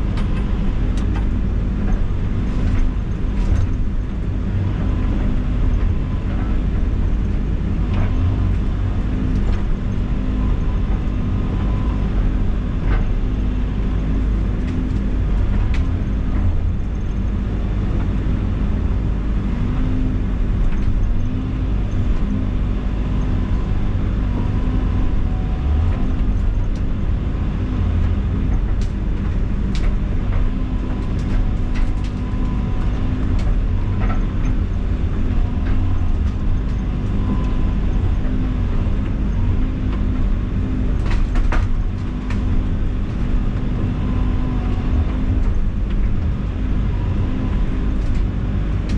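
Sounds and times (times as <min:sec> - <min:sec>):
diesel engine under load: 0:00.0 - 0:48.9
sharp cracks and knocks: 0:39.9 - 0:43.7.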